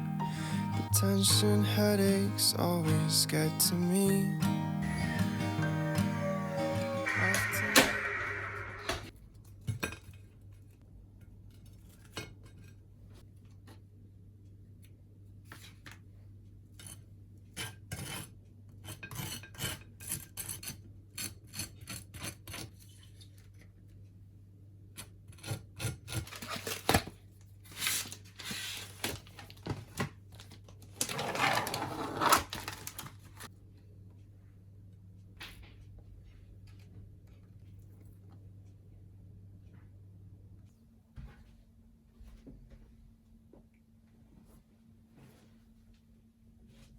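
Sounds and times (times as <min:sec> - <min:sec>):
scraping and rubbing: 0:31.0 - 0:33.0.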